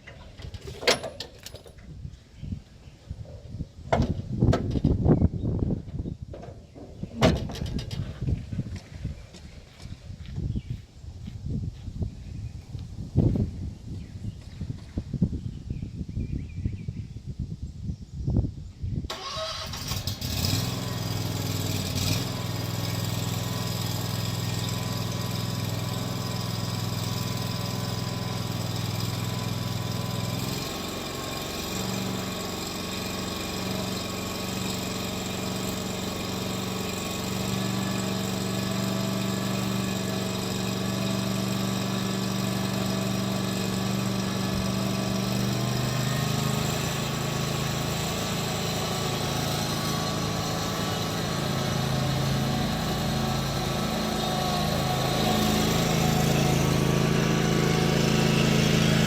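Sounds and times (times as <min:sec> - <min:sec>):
mower engine running: 0:19.1 - 0:59.0.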